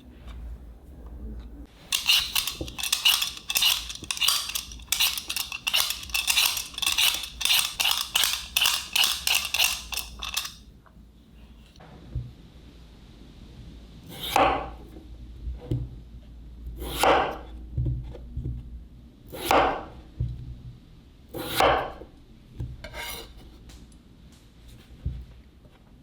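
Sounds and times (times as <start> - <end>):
blade scraping potato: 1.9 - 10.6.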